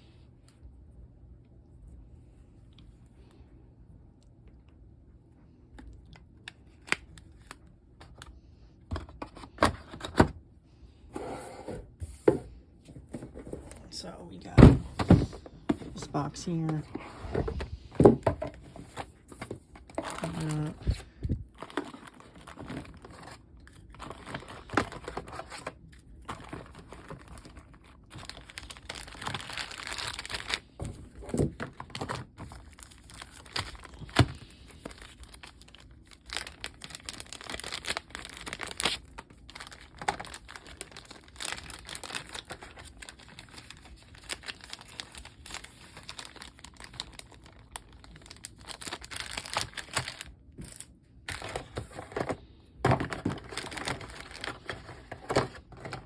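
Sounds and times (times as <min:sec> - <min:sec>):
packaging crinkling and rustling: 0:05.8 - 0:10.3, 0:11.7 - 0:56.0.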